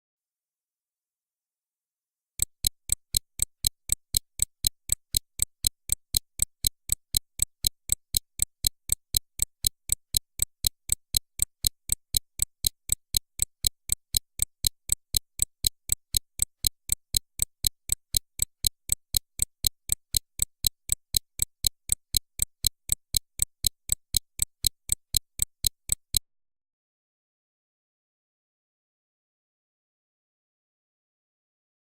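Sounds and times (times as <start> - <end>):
pocket watch ticking: 2.4 - 26.2.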